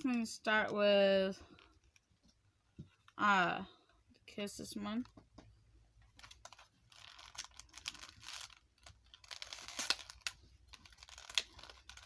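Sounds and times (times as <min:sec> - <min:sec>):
plastic packaging crinkling: 0:06.0 - 0:12.0.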